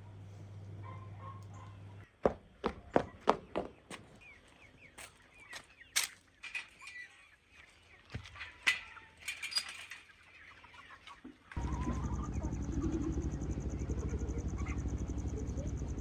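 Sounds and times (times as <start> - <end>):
low engine-like drone: 0.0 - 2.0, 11.6 - 16.0
chickens clucking: 0.8 - 16.0.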